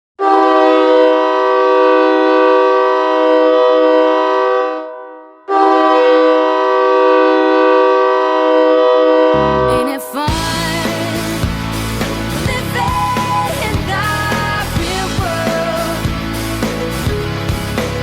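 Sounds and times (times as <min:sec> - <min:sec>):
goal air horn blasts: 0:00.2 - 0:09.7.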